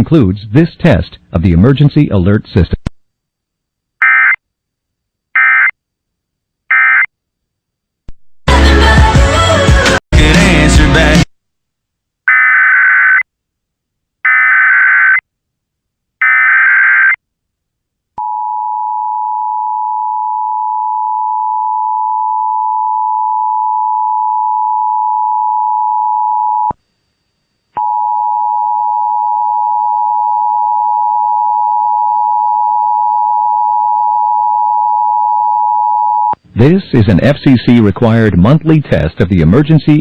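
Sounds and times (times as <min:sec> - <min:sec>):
screechy data tones: 0:04.0 - 0:04.4, 0:05.4 - 0:05.8, 0:06.7 - 0:07.1.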